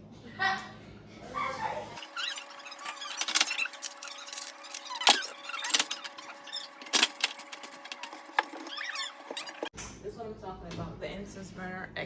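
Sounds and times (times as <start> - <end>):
kitchen items clattering: 1.7 - 9.7.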